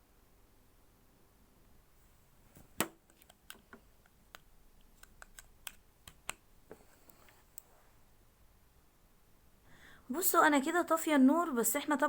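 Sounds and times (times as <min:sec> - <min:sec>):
small plastic clicks and taps: 0:02.8 - 0:06.8.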